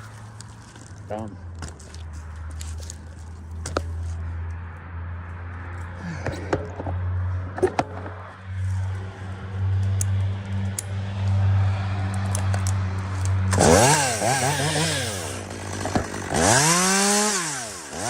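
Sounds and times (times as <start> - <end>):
sharp knocks and clicks: 7.6 - 8.2
chainsaw idling: 13.5 - 18.0.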